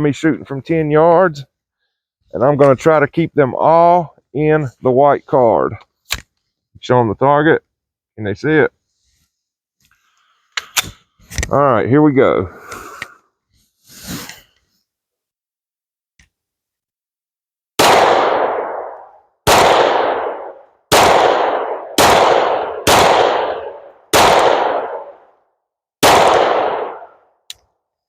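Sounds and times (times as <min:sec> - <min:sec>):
pistol shots: 0:17.8 - 0:25.2, 0:26.0 - 0:27.2.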